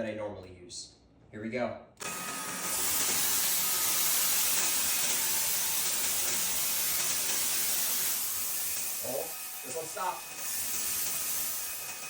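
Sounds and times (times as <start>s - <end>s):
stick vacuums whirring: 2.0s - 12.0s.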